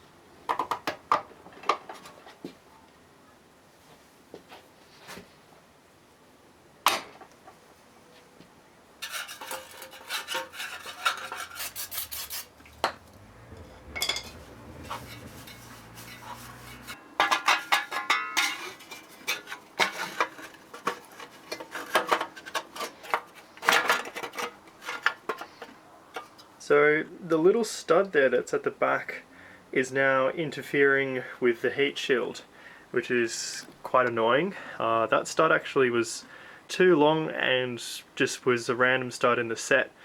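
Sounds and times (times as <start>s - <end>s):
metal tools clinking and scraping: 9.0s - 26.4s.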